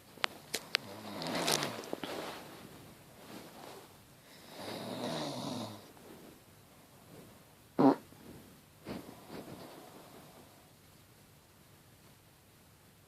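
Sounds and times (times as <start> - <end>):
person snoring: 4.4 - 5.9
loud fart: 7.8 - 8.1.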